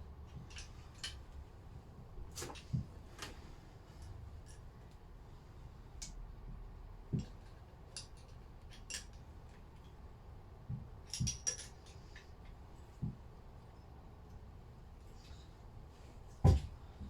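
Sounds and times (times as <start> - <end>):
metal tools and parts clinking: 11.1 - 12.0.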